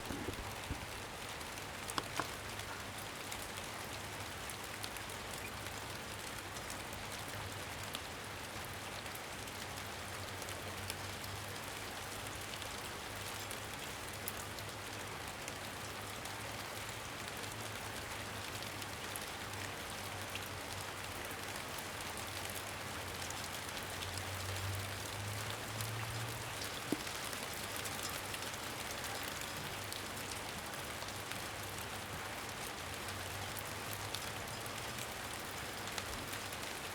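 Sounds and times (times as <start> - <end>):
steady rain hiss: 0.0 - 36.9.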